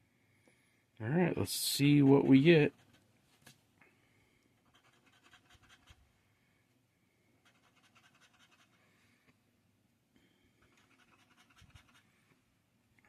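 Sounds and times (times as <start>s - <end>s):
scratching a scratch-off ticket: 2.2s - 3.1s, 4.6s - 6.0s, 7.4s - 8.8s, 10.6s - 12.1s.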